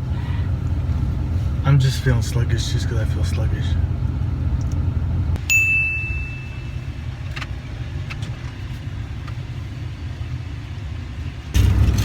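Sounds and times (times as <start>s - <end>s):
car engine idling: 0.0s - 5.4s
high-pitched ding: 5.5s - 6.7s.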